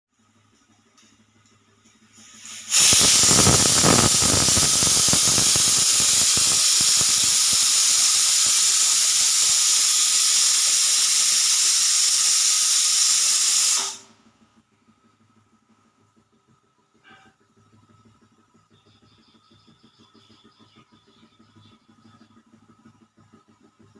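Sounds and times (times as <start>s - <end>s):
pressure cooker steam hissing: 2.1s - 14.2s.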